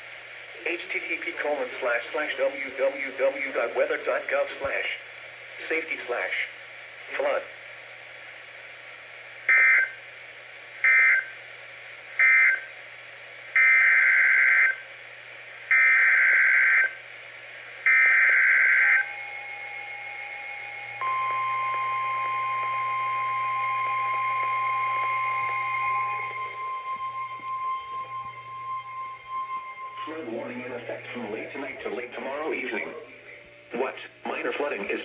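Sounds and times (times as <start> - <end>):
faint steady radio tone: 0.0 - 35.0
steady warning alarm tone: 9.5 - 10.0, 12.2 - 12.7, 13.6 - 14.8, 15.7 - 17.0, 17.9 - 34.2.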